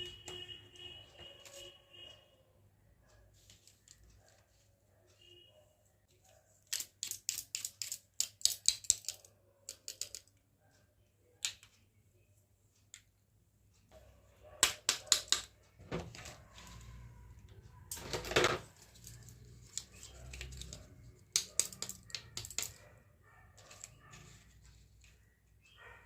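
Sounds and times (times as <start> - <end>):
plastic toy pieces clicking: 6.6 - 10.4, 19.0 - 22.8.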